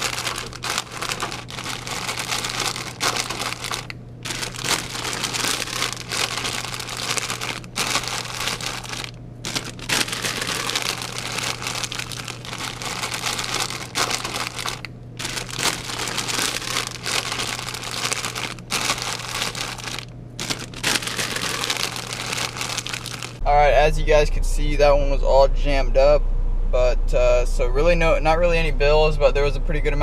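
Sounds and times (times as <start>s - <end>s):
crinkling and rustling: 0.0s - 23.4s
steady low hum: 0.0s - 30.0s.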